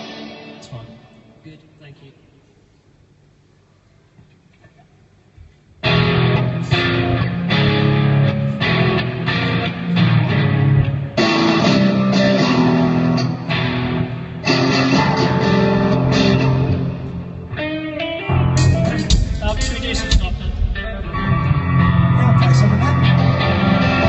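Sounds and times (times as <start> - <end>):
rock band playing: 0.0 - 0.7, 5.8 - 24.0.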